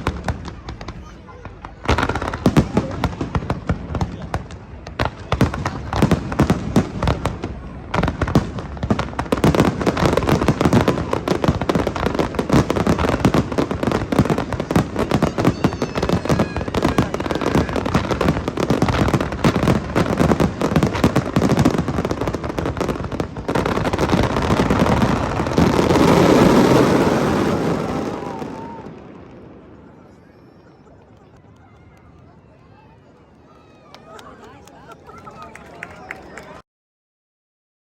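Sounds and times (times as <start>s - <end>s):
fireworks crackling: 0.0s - 32.5s.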